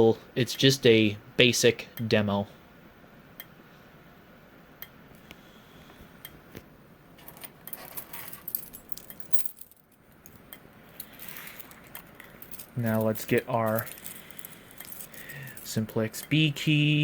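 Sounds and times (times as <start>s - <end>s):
keys jangling: 7.2s - 15.8s.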